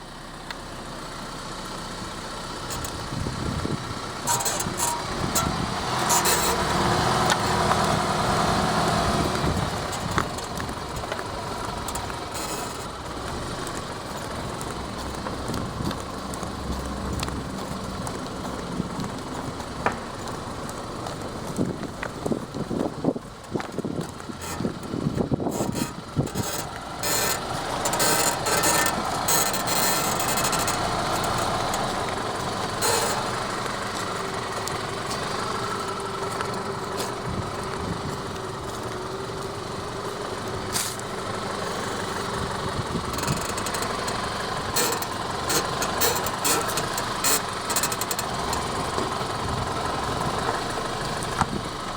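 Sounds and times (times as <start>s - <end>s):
car engine running: 0.0s - 51.9s
suspension squeak: 2.6s - 51.6s
sharp clicks: 43.0s - 49.4s.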